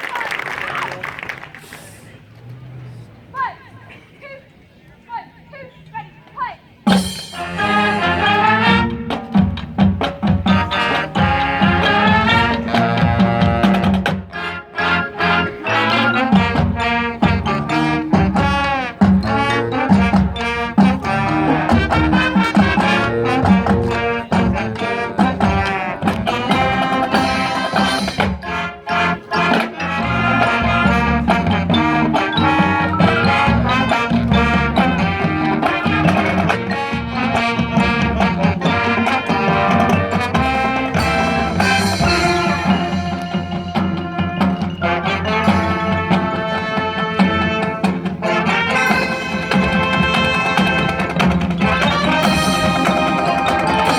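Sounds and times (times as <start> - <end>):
marching band playing: 6.7 - 53.9
drum hits: 16.3 - 28.7, 29.4 - 53.9.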